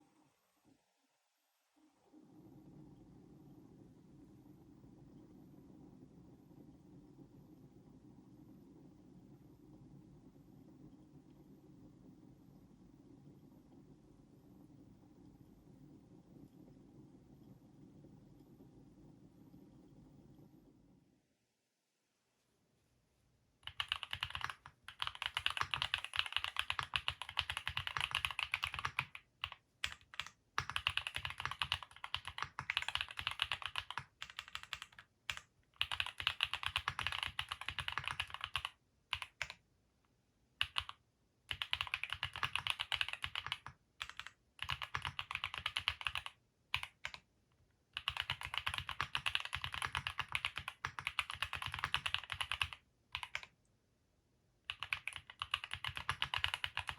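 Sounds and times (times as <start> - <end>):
mechanical keyboard typing: 23.6 - 39.6, 40.6 - 47.2, 48.0 - 53.6, 54.7 - 56.9.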